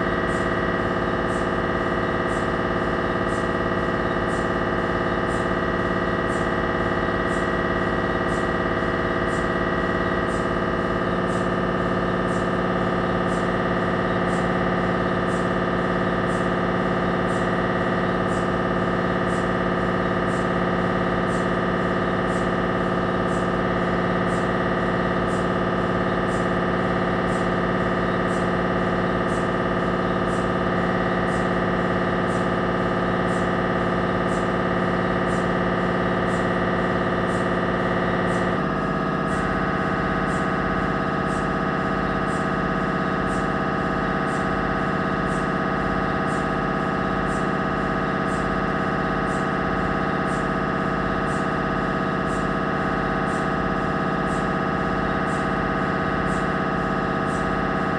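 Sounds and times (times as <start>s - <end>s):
mri scanner droning: 0.0s - 57.9s.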